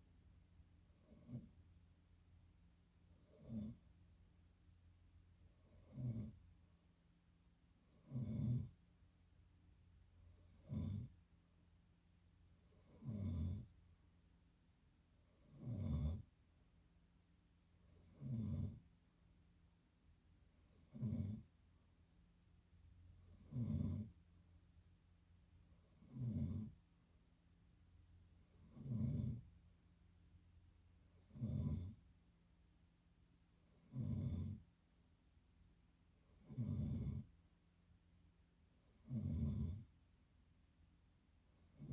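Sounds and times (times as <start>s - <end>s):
quiet breathing: 0.0s - 7.1s
person snoring: 5.7s - 6.4s, 23.3s - 24.2s, 33.9s - 34.6s, 36.4s - 37.3s, 39.0s - 39.9s.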